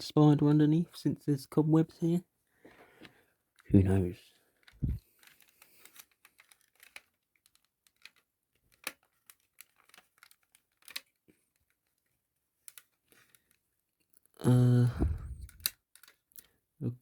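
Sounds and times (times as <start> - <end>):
plastic and metal parts clicking: 4.5 - 13.6, 15.4 - 16.5.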